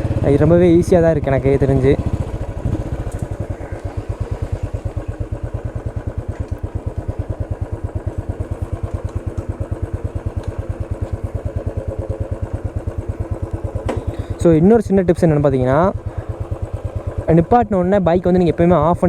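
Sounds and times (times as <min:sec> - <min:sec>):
motorcycle engine idling: 0:00.0 - 0:19.0.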